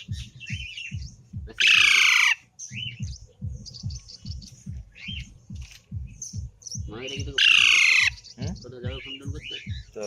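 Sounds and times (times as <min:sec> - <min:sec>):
rapid low pulsing: 0:00.0 - 0:01.6, 0:02.4 - 0:07.4
parrot screeching: 0:01.6 - 0:02.4, 0:07.4 - 0:08.2
parrot chirps and squeaks: 0:07.4 - 0:08.5.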